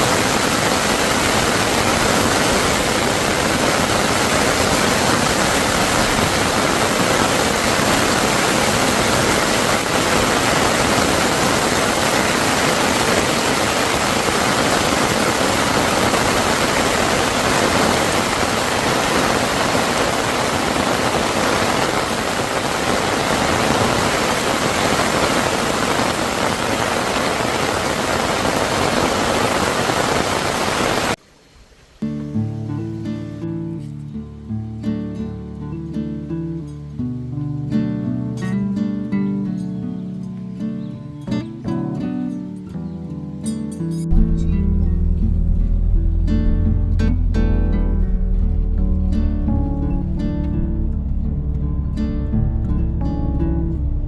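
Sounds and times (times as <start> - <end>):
stream water rushing: 0.0 - 31.5.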